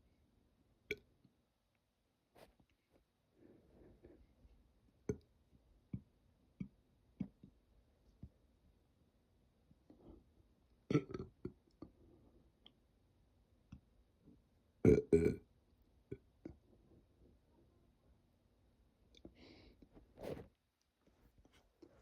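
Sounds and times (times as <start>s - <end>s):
person burping: 10.9s - 11.4s, 14.8s - 15.4s.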